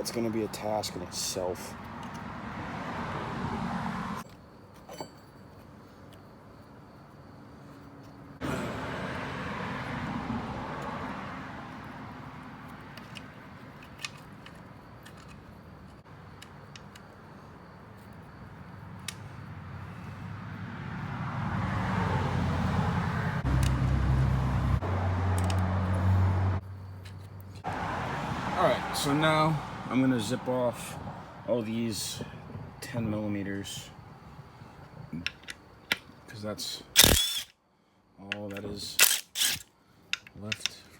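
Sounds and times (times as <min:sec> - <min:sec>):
cars passing: 0:00.0 - 0:04.2, 0:08.3 - 0:16.7, 0:17.3 - 0:35.1.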